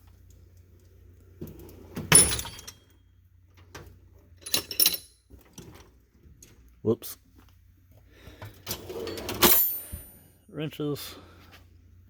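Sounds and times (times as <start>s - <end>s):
drawer rolling on slides: 8.6s - 9.6s.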